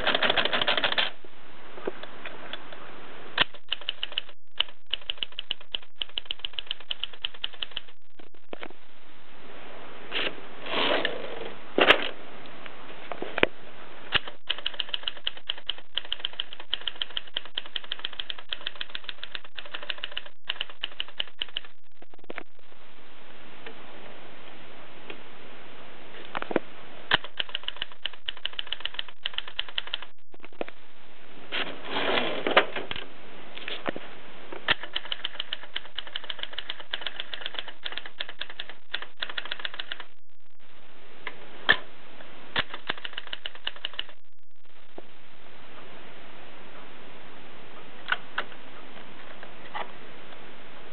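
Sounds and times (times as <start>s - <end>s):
typewriter clatter: 0.0s - 1.2s, 34.7s - 40.1s, 42.6s - 44.1s.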